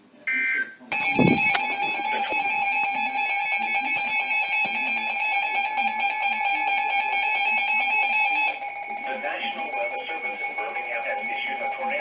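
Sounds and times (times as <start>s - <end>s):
steady electronic alarm tone: 0.9s - 12.0s.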